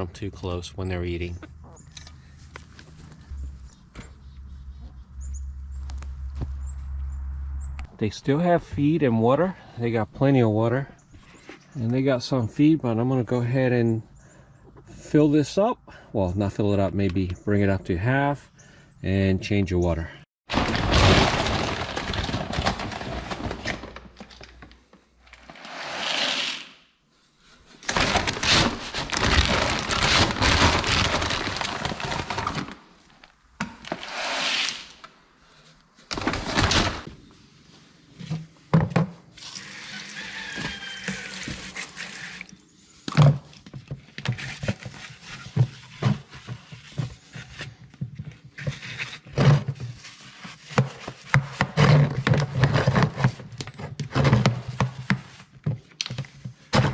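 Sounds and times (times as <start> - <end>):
containers knocking and clunking: 38.2 - 39.3
feed and water pouring: 39.4 - 42.7.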